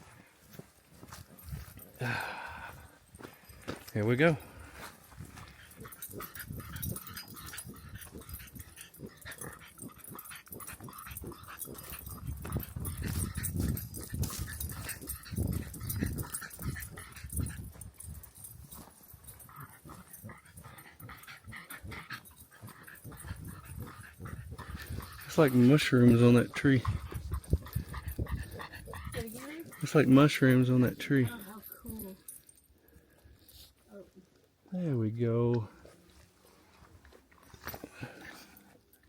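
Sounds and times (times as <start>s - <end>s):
wind gusts on microphone: 12.2s - 18.2s, 26.8s - 29.2s.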